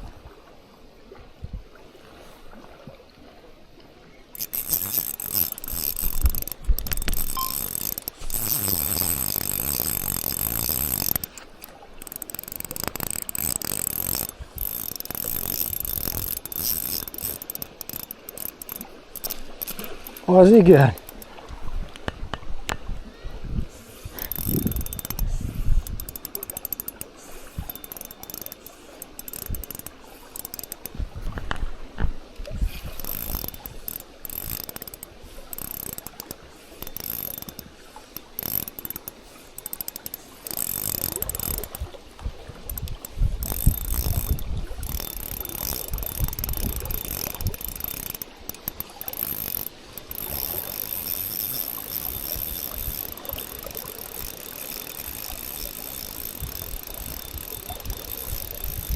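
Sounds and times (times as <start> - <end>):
fishing reel clicking and whirring: 4.4 - 21.4, 23.8 - 31.6, 32.4 - 58.9
wind buffeting microphone: 21.5 - 25.9.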